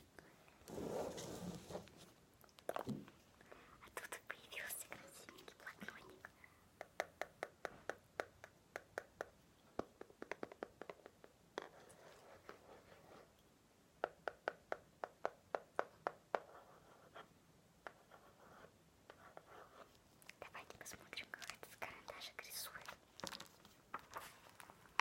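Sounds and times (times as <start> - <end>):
soft rubbing: 0.5 - 2.2
tapping on a notebook: 6.8 - 11.8.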